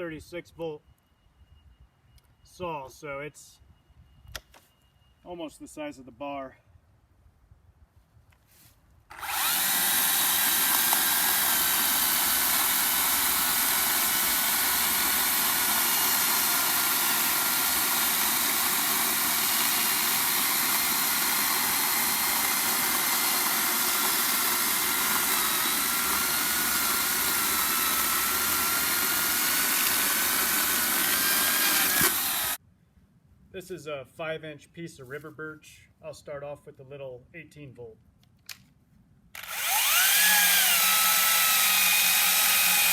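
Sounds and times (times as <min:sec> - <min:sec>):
chainsaw cutting through log: 0:09.1 - 0:32.6, 0:39.4 - 0:42.9.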